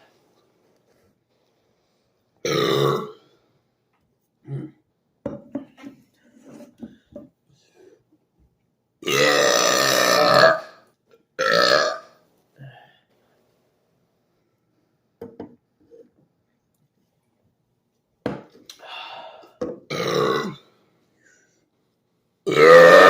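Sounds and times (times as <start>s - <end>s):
loud human burps: 2.4s - 3.2s, 4.4s - 4.8s, 9.0s - 10.8s, 11.4s - 12.1s, 19.9s - 20.6s, 22.5s - 23.0s.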